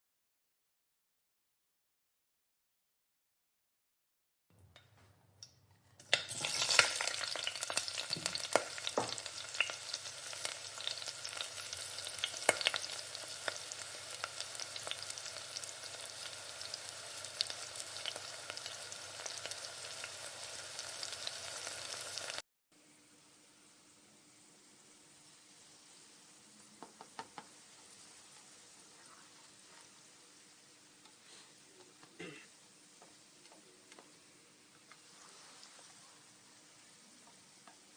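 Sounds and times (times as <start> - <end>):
food sizzling in hot oil: 6.0 - 22.4, 24.6 - 31.7, 34.2 - 37.9.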